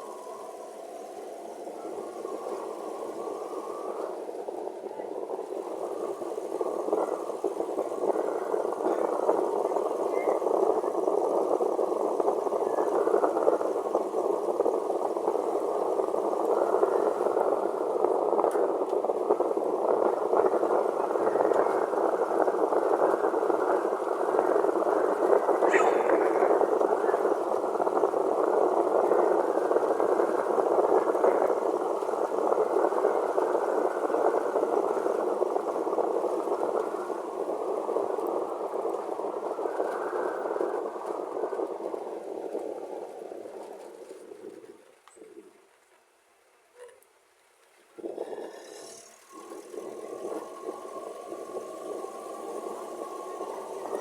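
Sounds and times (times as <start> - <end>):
frogs croaking in chorus: 23.8 - 29.4.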